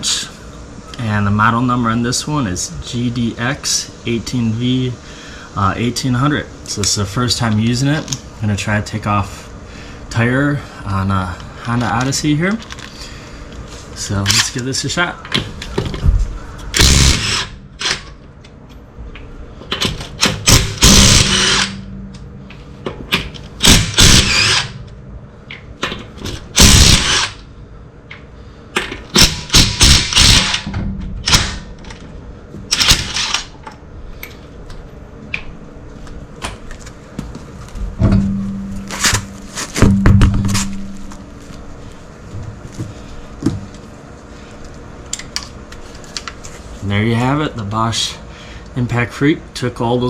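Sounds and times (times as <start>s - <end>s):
impact wrench hammering: 16.8s - 18.1s, 19.8s - 22.2s, 23.1s - 24.8s, 26.5s - 27.4s, 28.8s - 31.8s, 32.7s - 33.5s, 38.0s - 41.1s.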